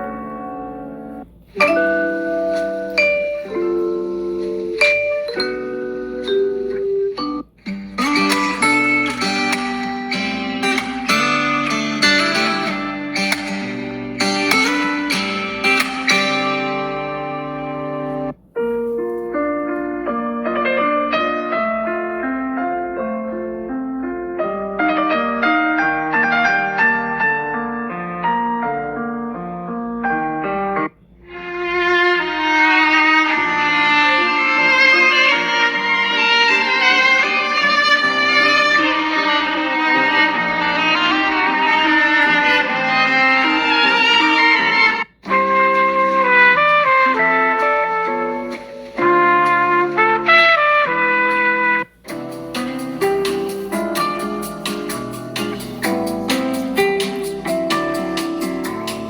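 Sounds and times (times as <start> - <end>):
piano-like ringtone melody: 0.0 - 30.9, 31.8 - 50.5, 52.1 - 59.0
phone ringtone melody: 1.6 - 9.5.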